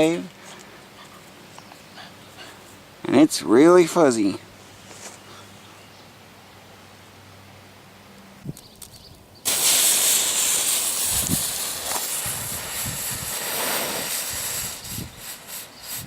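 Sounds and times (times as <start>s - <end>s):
fuse crackling: 8.8s - 16.0s
firework spraying hiss: 9.4s - 16.0s.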